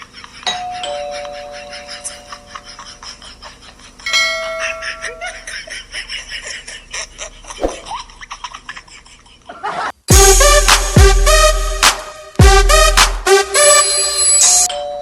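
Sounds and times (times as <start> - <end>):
laughter: 0.0 - 10.1
doorbell chime: 0.5 - 2.1, 13.7 - 15.0.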